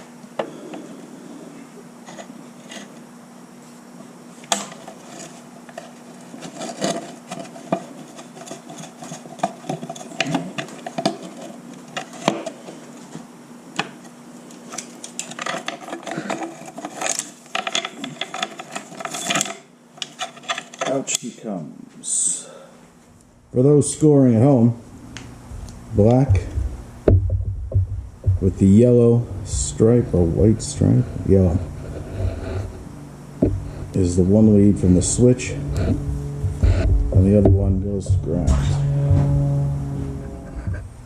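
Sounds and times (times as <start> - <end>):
sharp metal knocks: 26.2 - 28.5, 35.2 - 41.0.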